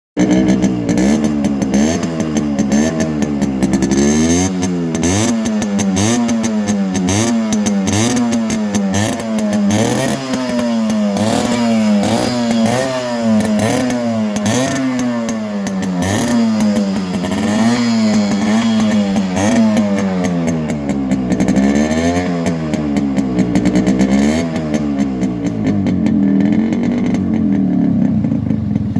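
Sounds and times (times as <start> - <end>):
motorcycle engine idling: 0.2 - 28.9
motorcycle engine revving: 0.2 - 28.9.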